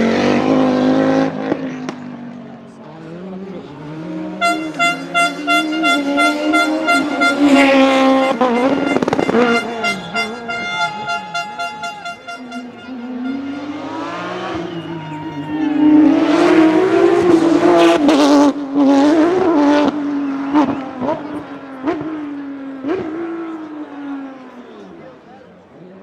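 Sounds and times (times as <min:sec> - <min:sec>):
exhaust bangs: 0:00.0 - 0:26.0
rally car engine revving: 0:00.0 - 0:26.0.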